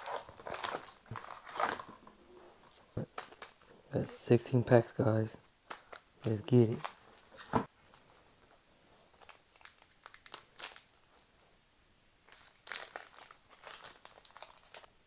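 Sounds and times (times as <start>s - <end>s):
foil pack tearing and crinkling: 0.0s - 2.0s, 9.2s - 11.1s, 12.3s - 14.9s.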